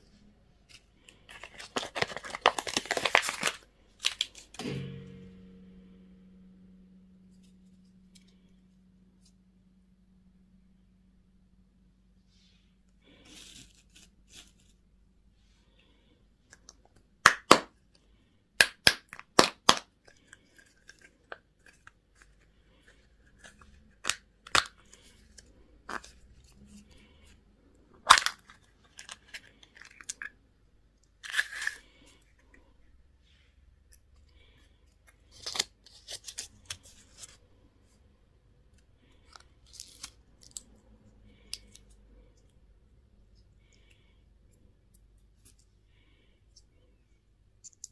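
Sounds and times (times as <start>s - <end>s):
packaging rustling: 0.7s - 4.6s
plastic packaging cracks and clicks: 1.3s - 4.6s, 28.1s - 29.2s.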